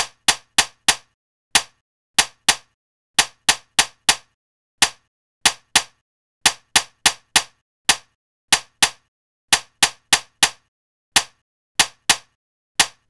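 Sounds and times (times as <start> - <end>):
staple gun firing: 6.5 - 13.0.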